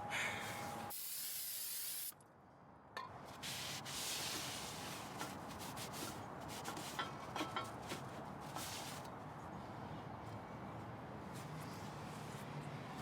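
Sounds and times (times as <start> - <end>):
aerosol spray can hissing: 0.9 - 2.1.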